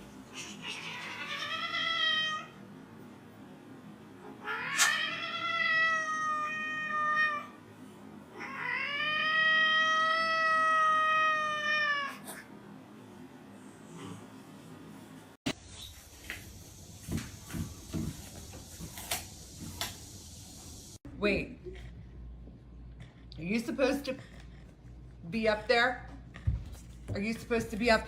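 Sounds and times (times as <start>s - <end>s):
cat yowling: 0.3s - 2.5s, 4.4s - 7.6s, 8.4s - 12.2s.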